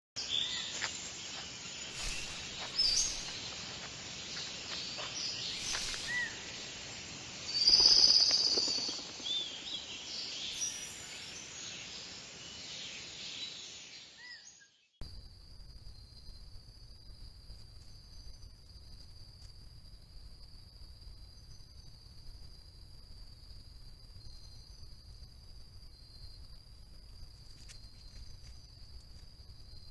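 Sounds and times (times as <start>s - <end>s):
short chirps: 5.5s - 6.5s.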